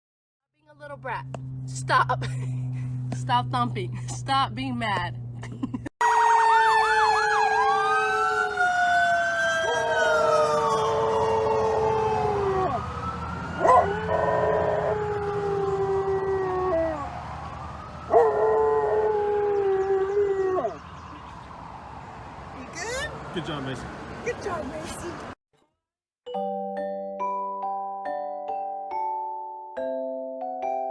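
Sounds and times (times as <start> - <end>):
dog howling: 6.0 - 12.9, 13.6 - 17.2, 18.1 - 20.8
wailing emergency siren: 6.0 - 23.6.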